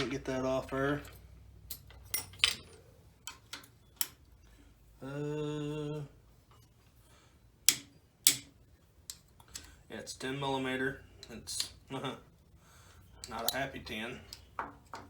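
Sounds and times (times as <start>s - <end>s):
hand tools clicking on metal: 7.7s - 8.5s, 13.2s - 15.0s.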